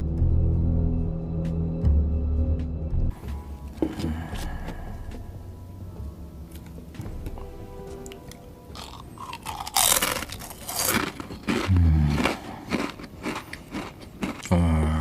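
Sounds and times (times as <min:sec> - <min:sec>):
crunching and chewing food: 0:07.9 - 0:15.0.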